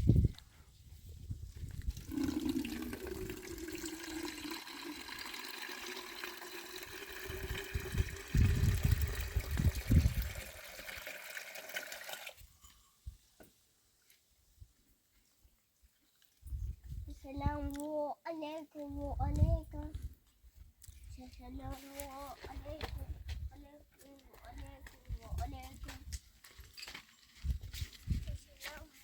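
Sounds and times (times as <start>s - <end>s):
water pouring: 1.7s - 12.4s.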